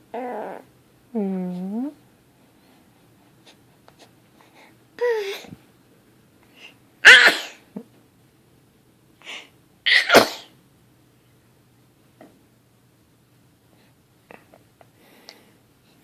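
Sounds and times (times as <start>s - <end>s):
child sneezing: 7.0s - 7.7s, 9.9s - 10.5s.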